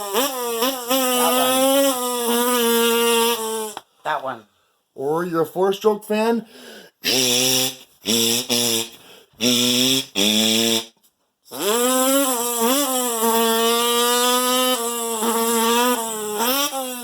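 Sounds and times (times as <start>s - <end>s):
man imitating dirt bike engine: 0.0s - 3.8s.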